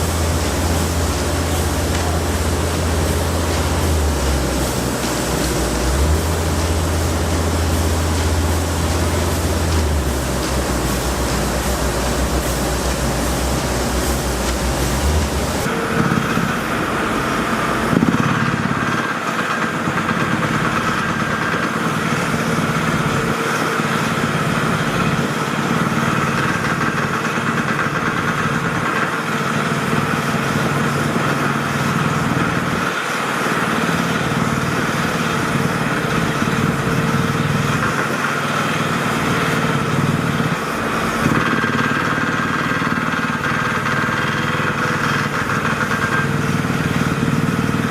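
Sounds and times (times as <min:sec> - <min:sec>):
high whine: 0:00.0 - 0:18.8
engine idling: 0:00.0 - 0:47.9.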